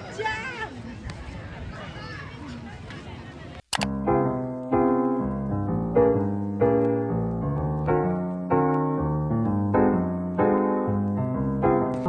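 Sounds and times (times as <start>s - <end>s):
piano playing chords: 3.9s - 12.0s.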